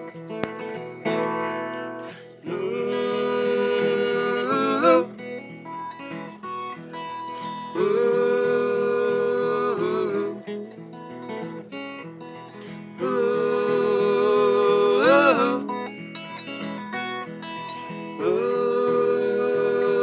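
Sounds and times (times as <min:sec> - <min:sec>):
held lead notes bending: 0:00.0 - 0:07.1
acoustic guitar playing: 0:00.0 - 0:20.0.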